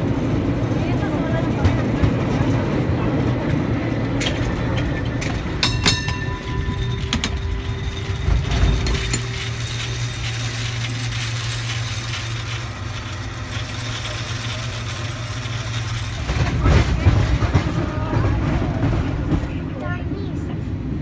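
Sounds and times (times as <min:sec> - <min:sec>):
cable car rumbling on rails: 0:00.0 - 0:21.0
metallic clanks and ringing: 0:04.2 - 0:16.2.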